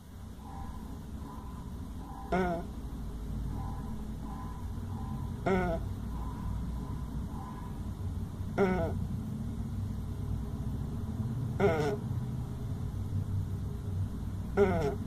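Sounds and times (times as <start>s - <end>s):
steady low rumble: 0.0s - 15.0s
opossum snoring: 2.2s - 2.7s, 4.4s - 6.2s, 8.5s - 9.1s, 11.6s - 12.1s, 14.5s - 15.0s.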